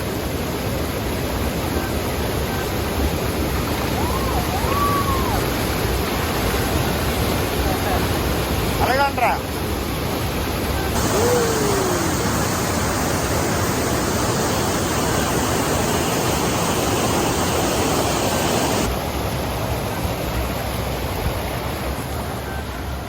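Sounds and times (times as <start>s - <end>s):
waterfall rushing: 10.9s - 19.0s.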